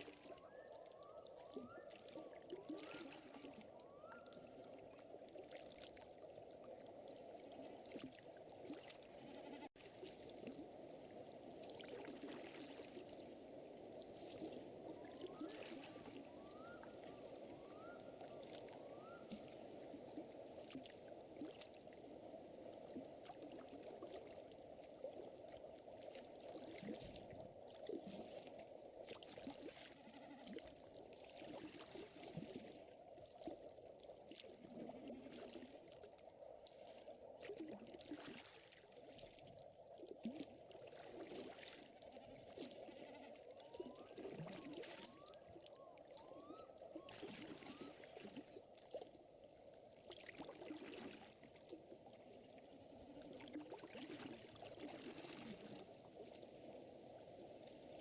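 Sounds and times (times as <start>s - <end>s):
watery wash: 0.0s - 58.0s.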